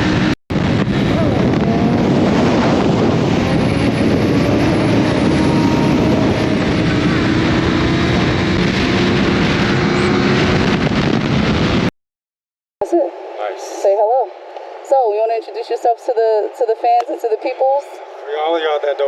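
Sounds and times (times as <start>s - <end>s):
wind rushing: 0.0s - 11.9s.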